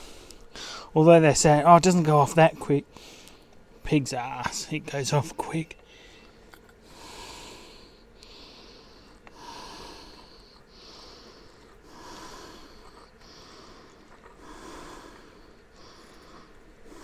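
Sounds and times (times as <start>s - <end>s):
person breathing: 0.0s - 1.0s, 2.9s - 3.6s, 5.8s - 17.0s.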